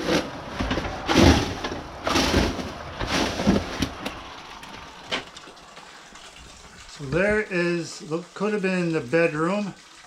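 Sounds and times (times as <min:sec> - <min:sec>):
footsteps on crunching debris: 0:00.0 - 0:05.9.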